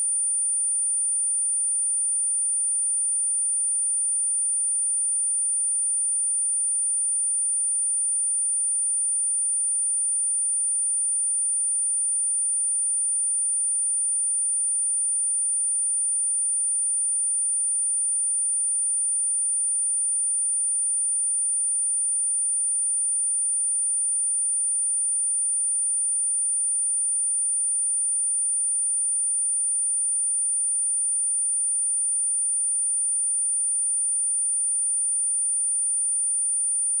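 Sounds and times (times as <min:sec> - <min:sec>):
high-pitched sine-wave test tone: 0:16.9 - 0:37.0.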